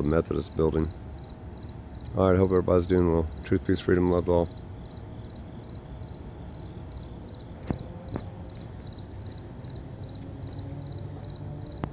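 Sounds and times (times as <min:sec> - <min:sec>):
cricket chirping: 0:00.0 - 0:11.9.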